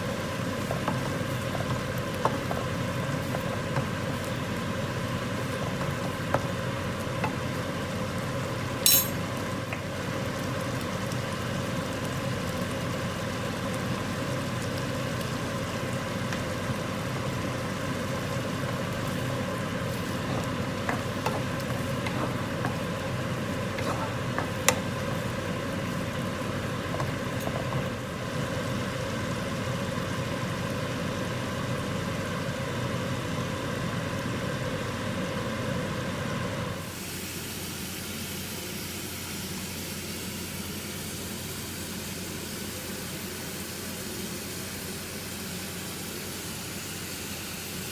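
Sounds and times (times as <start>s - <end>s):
food sizzling in a pan: 0.0s - 47.9s
utensil clinks: 8.9s - 9.2s.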